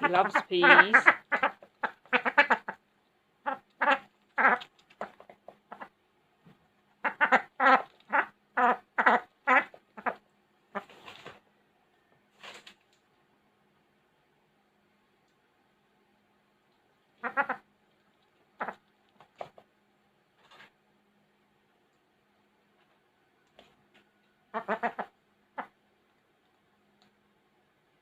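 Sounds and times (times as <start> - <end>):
duck giving short calls: 3.4 - 5.1, 17.2 - 17.7, 24.5 - 25.7.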